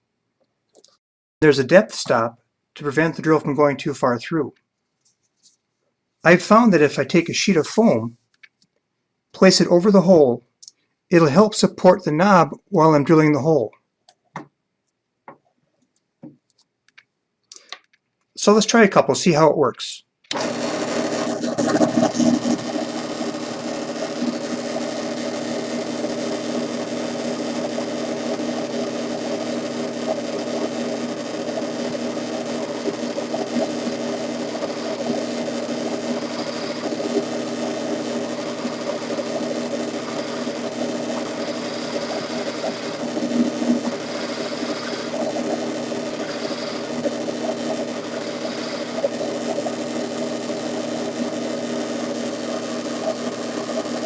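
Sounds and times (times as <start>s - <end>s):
drill press motor humming: 20.3s - 54.0s.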